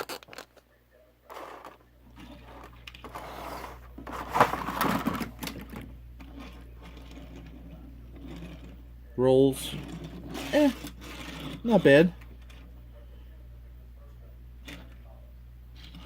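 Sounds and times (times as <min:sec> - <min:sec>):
toy car wheels whirring: 0:01.3 - 0:05.6, 0:06.2 - 0:08.8, 0:09.6 - 0:12.7.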